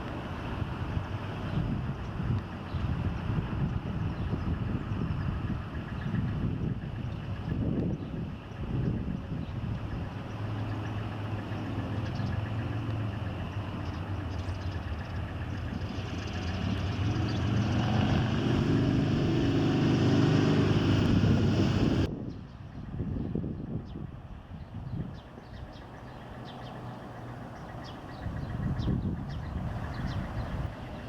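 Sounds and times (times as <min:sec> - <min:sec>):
vehicle engine running: 0:00.0 - 0:22.1.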